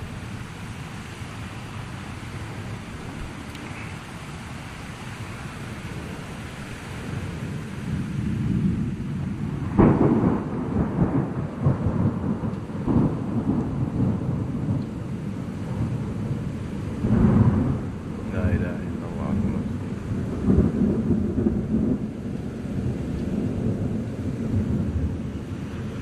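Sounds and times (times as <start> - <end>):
steady rain hiss: 0.0 - 26.0
thunder rumbling and cracking: 7.0 - 26.0.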